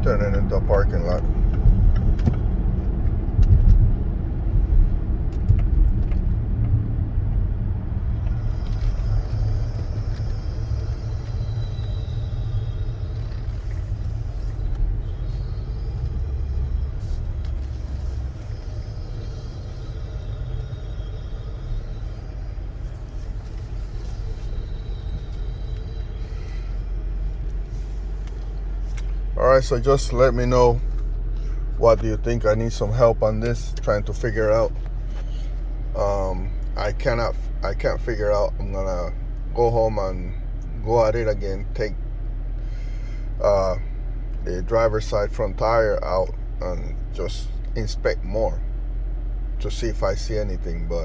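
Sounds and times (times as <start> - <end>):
high-pitched steering grinding squeal: 0.0 - 2.2, 7.7 - 48.6
car engine low rumble: 0.0 - 51.0.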